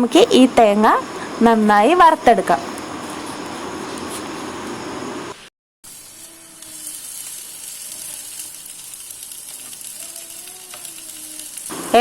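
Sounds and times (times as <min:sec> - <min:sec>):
food sizzling in oil: 0:00.2 - 0:12.0.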